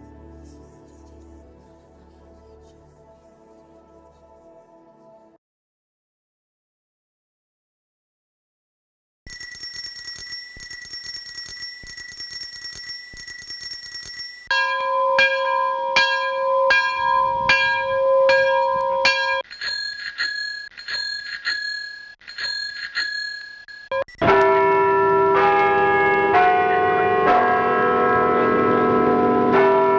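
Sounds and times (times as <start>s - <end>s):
small high bell ringing fast: 9.3s - 23.9s
large low bell strikes: 14.5s - 19.4s.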